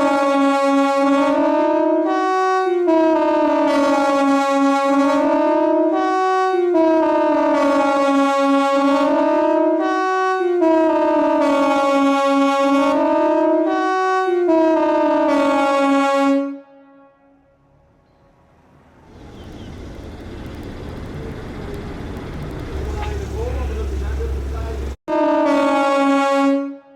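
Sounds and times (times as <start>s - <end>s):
multi-tone siren: 0.0s - 16.4s.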